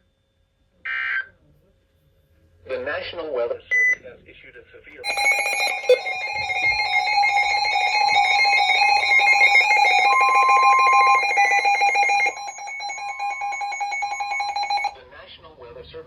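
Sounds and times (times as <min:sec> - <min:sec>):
fast-pulsing electronic alarm tone: 0:05.0 - 0:14.9.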